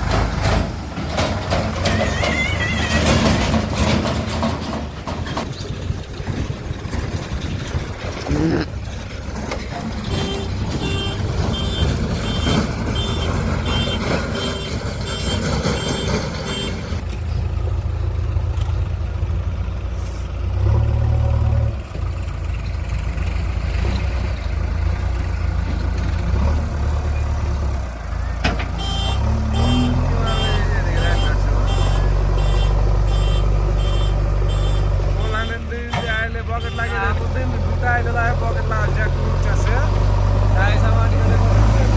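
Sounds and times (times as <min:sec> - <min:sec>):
heavy diesel machine running: 0:00.0 - 0:41.9
reversing alarm beeping: 0:10.1 - 0:16.9.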